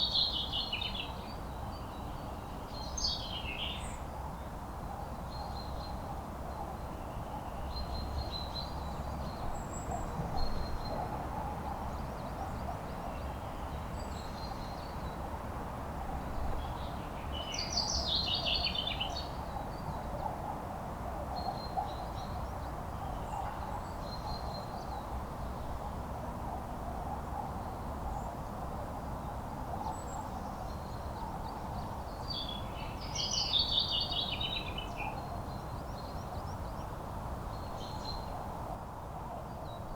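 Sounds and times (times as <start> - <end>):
bird song phrases: 29.8 - 38.3.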